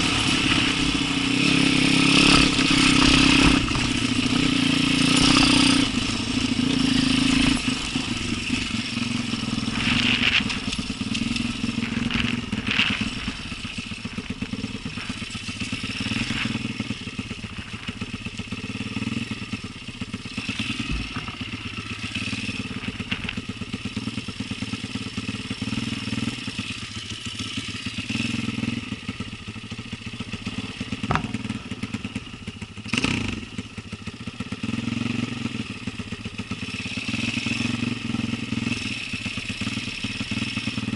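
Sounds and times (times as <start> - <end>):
motorcycle engine revving: 0.0 - 40.9
knocks and rattles: 31.1 - 31.6.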